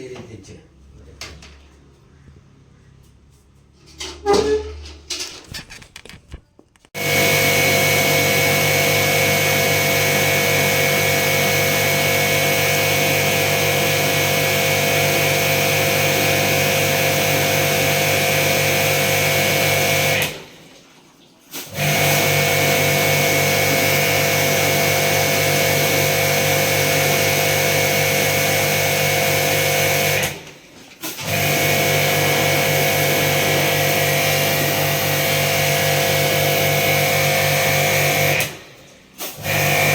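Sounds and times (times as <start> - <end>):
electric pressure washer running: 7.0 - 20.5, 21.6 - 39.9.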